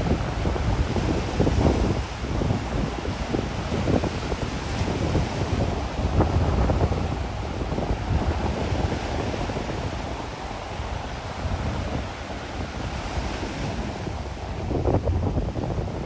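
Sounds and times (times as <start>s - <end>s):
gentle sea waves on shore: 0.0s - 16.0s
wind buffeting microphone: 0.0s - 16.0s.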